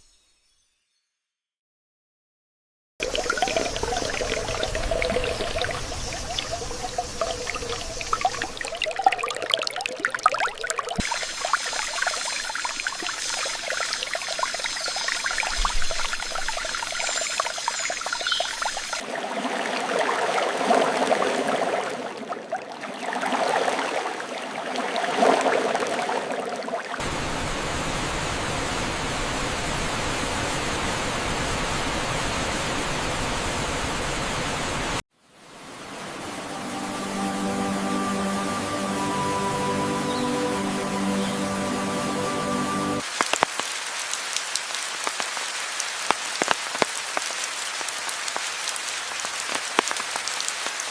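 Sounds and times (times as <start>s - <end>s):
running water splashing and pouring: 3.0s - 27.2s, 40.2s - 50.9s.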